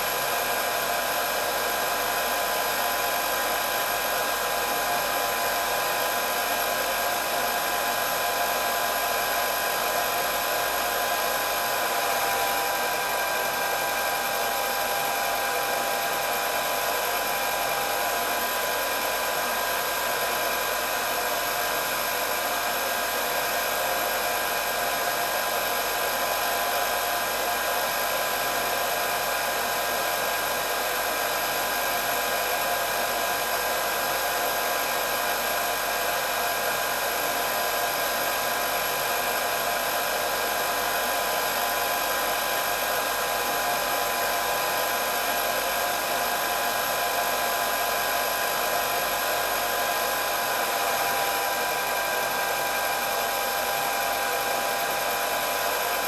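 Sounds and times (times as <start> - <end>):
hair dryer running: 0.0 - 56.0.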